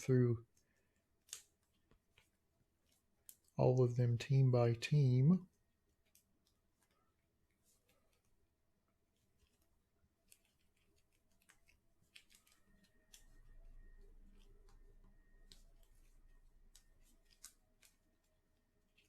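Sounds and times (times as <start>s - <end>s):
trading cards clicking: 10.2s - 13.4s, 15.4s - 18.3s.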